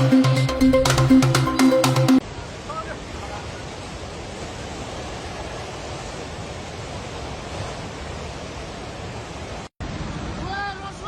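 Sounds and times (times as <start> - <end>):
rushing floodwater roar: 2.2 - 11.0.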